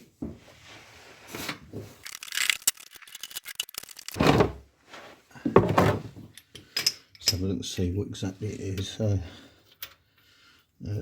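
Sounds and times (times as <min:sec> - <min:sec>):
tools clicking and clattering: 0:02.0 - 0:04.4, 0:05.7 - 0:07.5.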